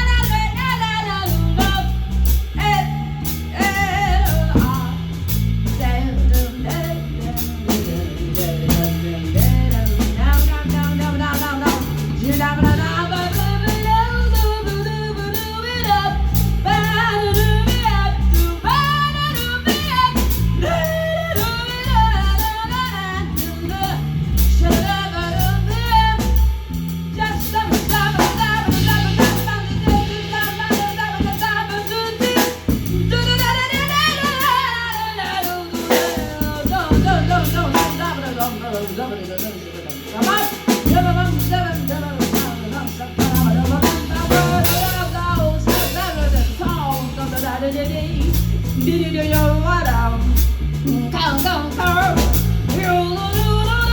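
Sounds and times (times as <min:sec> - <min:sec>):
live band playing: 0:00.0 - 0:53.9
person singing: 0:27.2 - 0:53.9.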